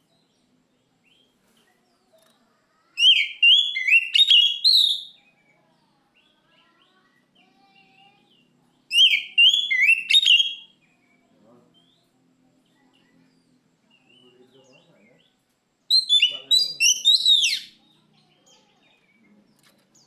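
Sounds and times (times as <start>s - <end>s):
faint soft bird calls: 0.0s - 20.0s
bird singing whistled phrases: 3.0s - 5.3s, 8.9s - 10.8s, 15.9s - 17.8s.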